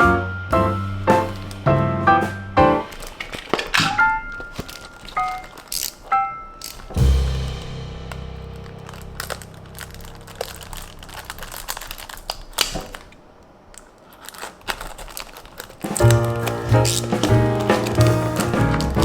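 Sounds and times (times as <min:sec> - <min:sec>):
bass-heavy music: 0:00.0 - 0:02.8, 0:16.1 - 0:19.0
toy packaging crinkling: 0:01.3 - 0:01.7, 0:02.7 - 0:19.0.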